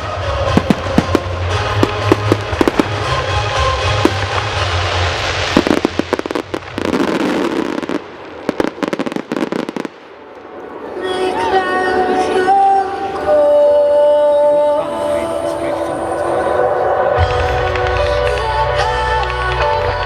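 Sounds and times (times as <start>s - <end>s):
fireworks bursting and crackling: 0.0s - 10.9s
music with long held notes: 0.0s - 20.0s.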